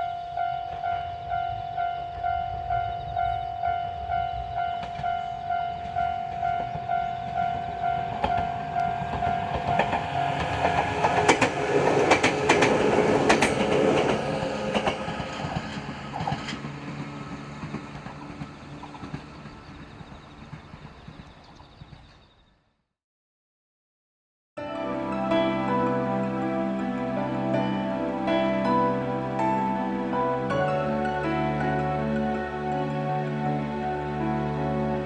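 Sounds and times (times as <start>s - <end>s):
level crossing warning bell: 0.0s - 15.8s
train rumble: 0.0s - 22.4s
train wheels clicking over rail joints: 4.3s - 22.2s.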